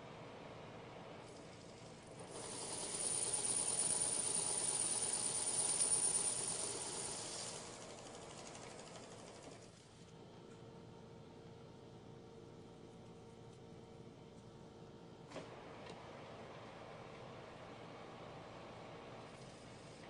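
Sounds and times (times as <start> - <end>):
metal lathe cutting hiss and whine: 1.4 - 7.9.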